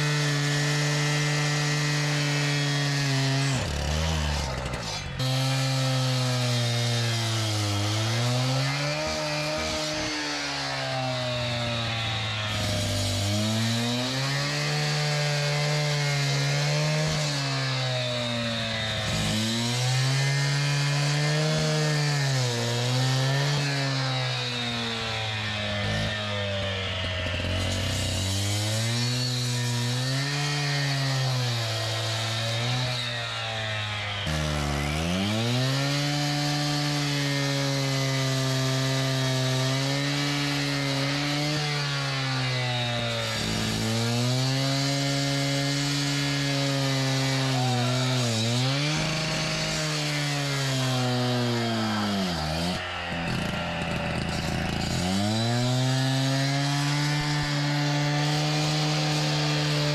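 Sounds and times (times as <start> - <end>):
power cutting tool running: 0.0 - 59.9.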